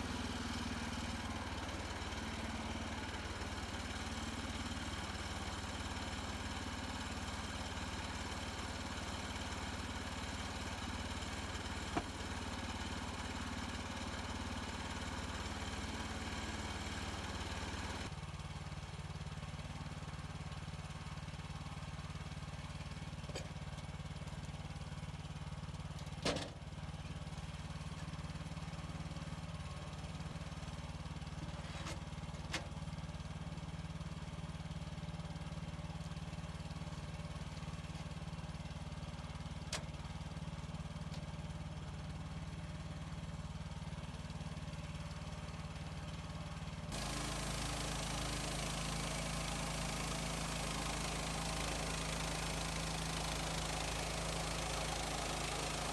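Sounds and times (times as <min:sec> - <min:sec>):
sawmill engine running: 0:00.0 - 0:18.1, 0:33.0 - 0:55.9
bandsaw cutting wood: 0:46.9 - 0:55.9.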